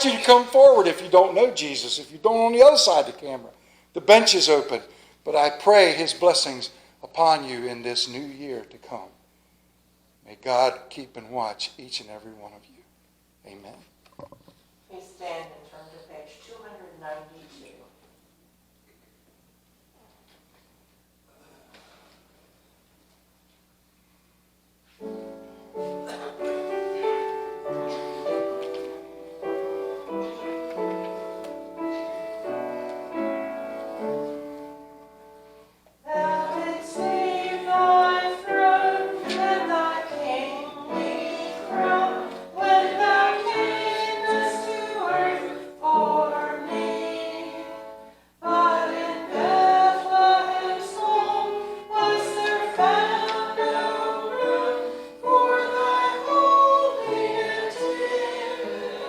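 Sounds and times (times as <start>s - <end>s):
congregation singing a hymn: 0.0s - 3.1s, 25.0s - 35.0s, 36.0s - 59.0s
instrumental hymn chords: 24.9s - 59.0s.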